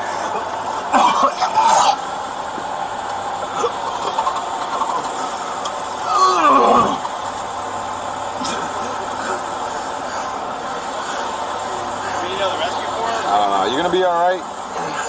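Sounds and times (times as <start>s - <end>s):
car engine idling: 0.0s - 15.0s
man groaning: 6.0s - 7.0s.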